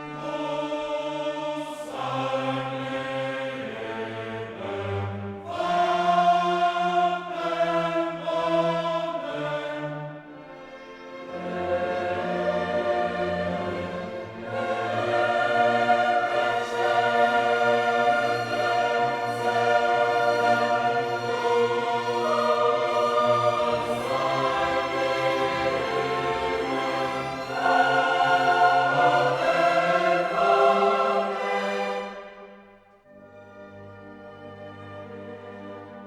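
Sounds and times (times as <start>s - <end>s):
choir singing long notes: 0.0s - 36.0s
orchestra playing: 10.3s - 36.0s.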